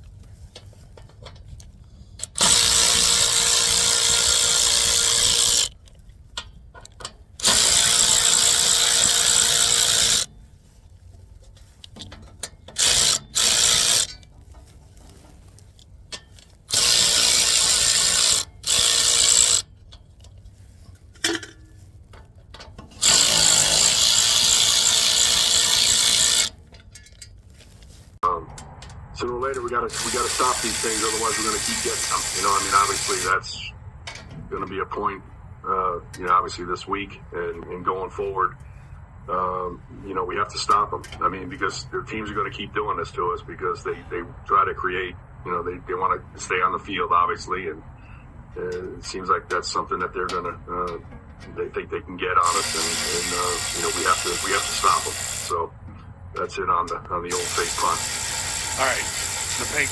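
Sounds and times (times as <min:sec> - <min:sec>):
power tool running in bursts: 0:02.2 - 0:05.8, 0:07.4 - 0:10.3, 0:12.8 - 0:14.1, 0:16.7 - 0:19.7, 0:23.0 - 0:26.6, 0:29.9 - 0:33.4, 0:52.4 - 0:55.6, 0:57.3 - 0:59.9.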